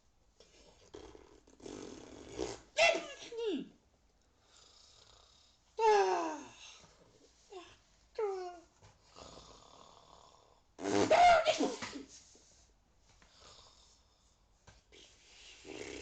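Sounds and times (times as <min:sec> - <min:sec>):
person snoring and wheezing: 0:00.7 - 0:02.7, 0:15.6 - 0:16.0.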